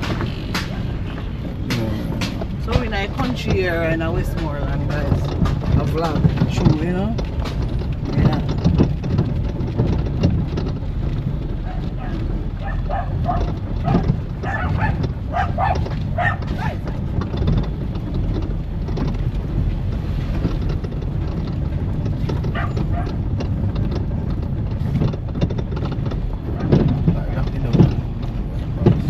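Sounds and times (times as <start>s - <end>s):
car engine and road rumble: 0.0s - 29.0s.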